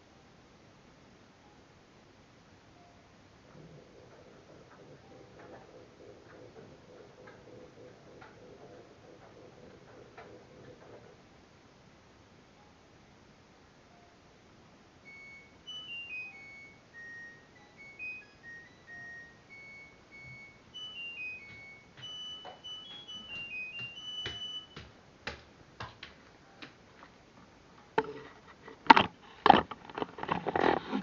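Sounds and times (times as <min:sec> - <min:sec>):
washing machine beeping tune: 0:15.0 - 0:25.0.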